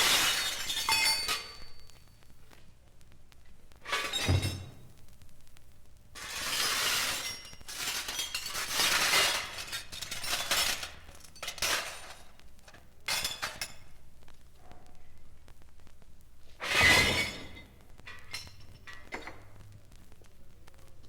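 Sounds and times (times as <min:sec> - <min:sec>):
glass breaking and shattering: 0:00.0 - 0:02.0, 0:03.9 - 0:04.9, 0:06.2 - 0:12.3
tinkling glass fragments: 0:00.0 - 0:02.1, 0:06.2 - 0:12.3.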